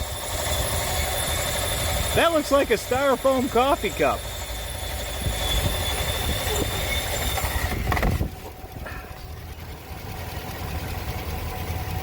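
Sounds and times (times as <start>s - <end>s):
high-pitched whistle: 0.0s - 7.9s
car engine idling: 0.0s - 12.0s.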